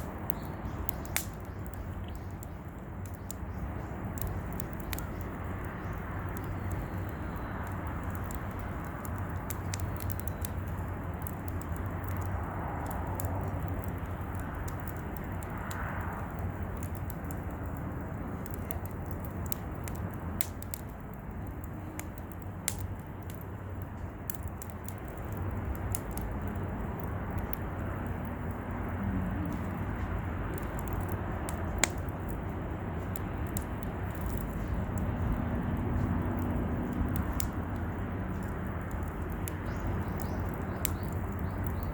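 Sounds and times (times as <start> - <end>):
campfire crackling and popping: 0.0 - 41.9
low rushing background: 25.3 - 41.7.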